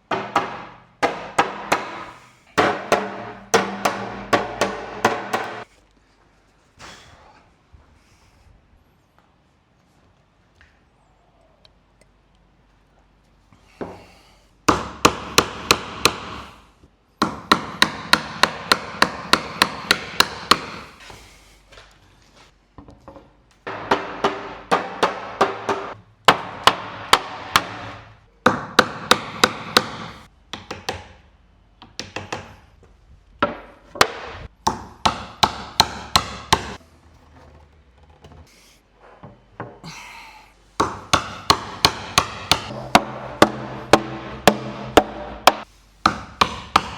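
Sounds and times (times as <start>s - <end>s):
mallet striking chisel into wood: 0.0s - 5.7s, 14.7s - 16.5s, 17.2s - 20.9s, 23.7s - 31.2s, 31.8s - 32.5s, 33.4s - 36.8s, 40.8s - 46.9s.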